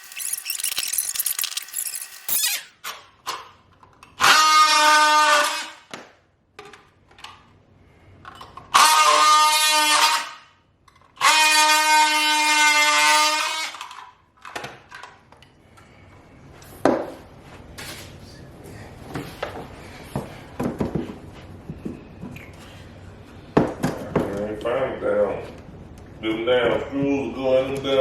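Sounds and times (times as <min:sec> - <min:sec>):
power tool running high pitch: 0:00.0 - 0:02.7.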